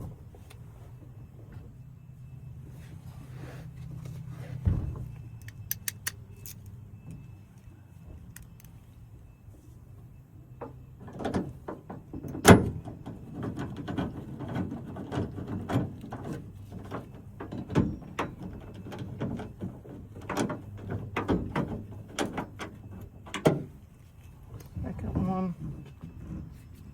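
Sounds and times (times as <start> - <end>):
socket wrench clicking on bolt: 5.4 - 6.7.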